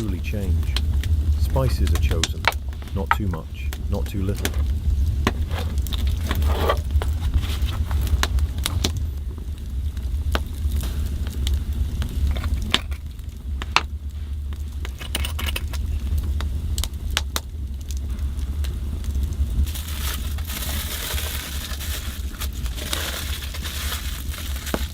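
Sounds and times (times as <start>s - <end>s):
steady low rumble: 0.0s - 24.9s
utensils clicking and clinking: 15.0s - 15.8s.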